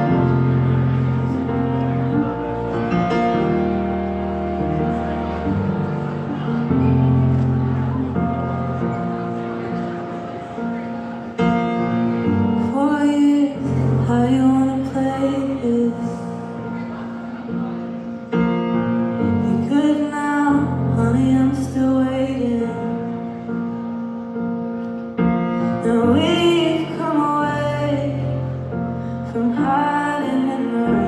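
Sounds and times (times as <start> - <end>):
person singing: 29.2 - 31.0.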